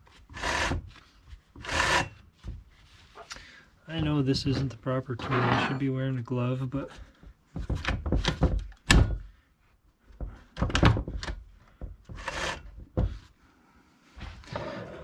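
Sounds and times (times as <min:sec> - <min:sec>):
metal knocks and scraping: 0:04.0 - 0:06.0.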